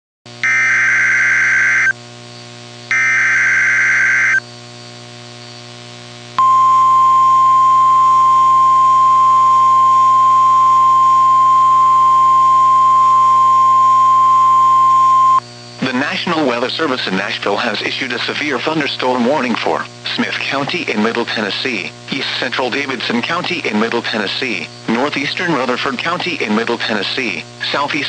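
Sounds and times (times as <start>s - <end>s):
digital data tone screech: 0.4s - 2.0s, 2.9s - 4.4s
steady warning alarm tone: 0.4s - 2.0s, 2.9s - 4.4s.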